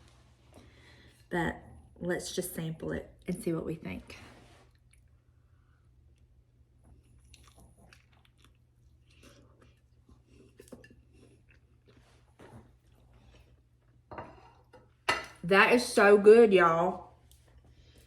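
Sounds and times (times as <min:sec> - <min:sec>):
chewing soft food: 0:04.6 - 0:15.0, 0:17.2 - 0:18.0.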